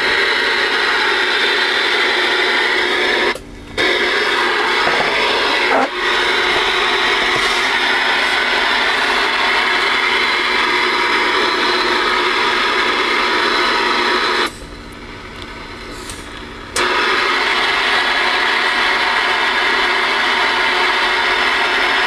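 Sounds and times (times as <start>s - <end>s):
radio static and hiss: 0.0s - 14.5s.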